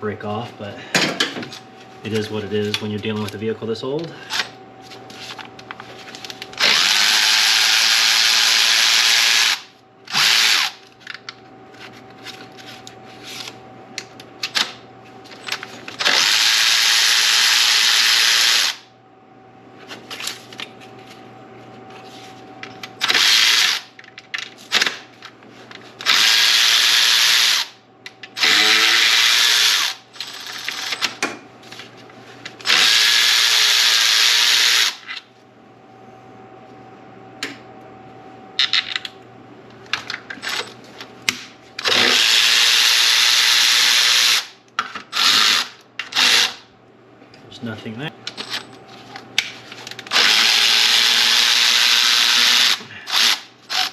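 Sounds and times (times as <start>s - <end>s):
power tool driving bolts: 6.6s - 10.8s, 16.0s - 18.8s, 23.0s - 23.9s, 28.4s - 31.2s, 41.8s - 46.6s, 50.0s - 53.9s.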